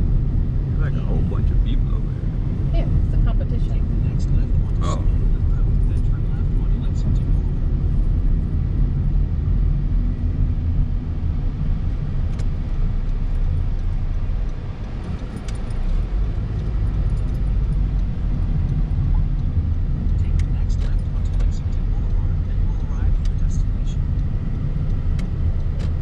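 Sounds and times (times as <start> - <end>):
car engine and road rumble: 0.0 - 26.0.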